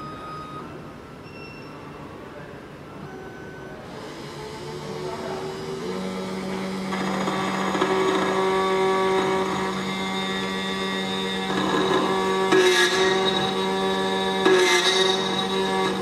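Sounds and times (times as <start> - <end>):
key cutting machine whine: 3.9 - 16.0.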